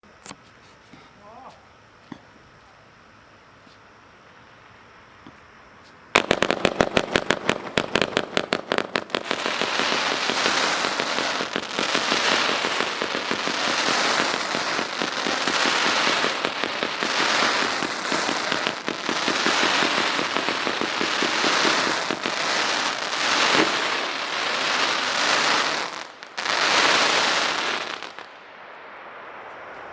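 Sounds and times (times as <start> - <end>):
firework crackling hiss: 0.0 - 29.9
firework pops: 5.2 - 26.0.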